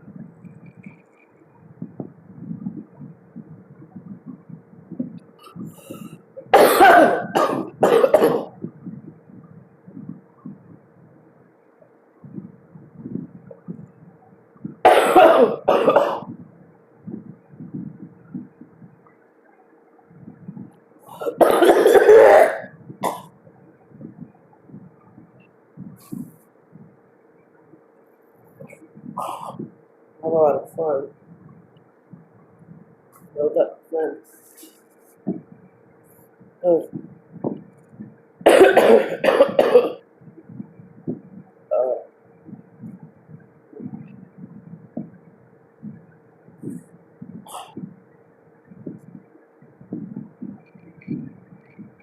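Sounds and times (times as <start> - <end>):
woman coughing: 6.5 - 8.6, 14.9 - 16.3, 21.2 - 23.3, 38.5 - 40.0.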